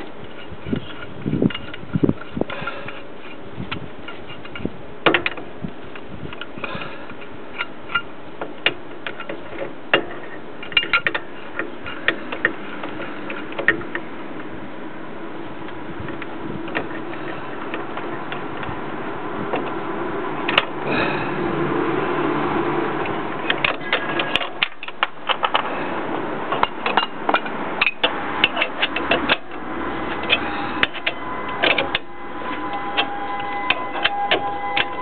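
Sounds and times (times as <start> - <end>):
steady background noise: 0.0 - 35.0.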